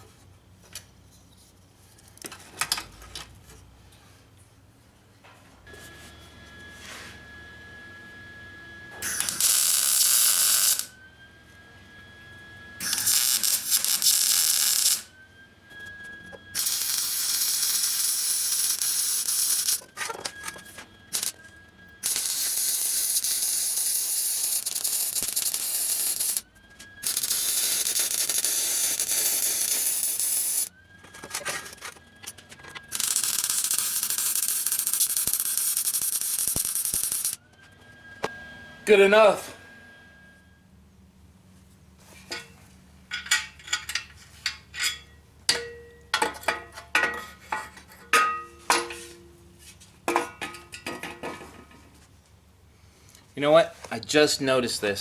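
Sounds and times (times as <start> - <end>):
arc welder crackling hiss: 9.0 - 10.9, 12.8 - 15.1, 16.6 - 19.9, 21.1 - 21.4, 22.0 - 30.7, 32.9 - 37.4.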